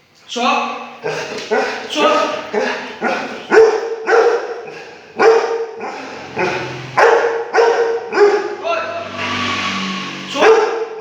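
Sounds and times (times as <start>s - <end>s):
dog barking: 1.0s - 8.6s, 10.4s - 11.0s.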